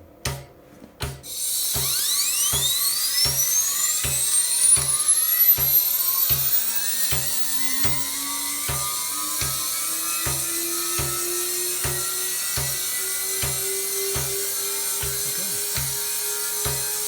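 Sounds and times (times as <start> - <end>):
grinding spindle high whine: 1.3 - 17.0
low hum rising in pitch: 1.9 - 12.2.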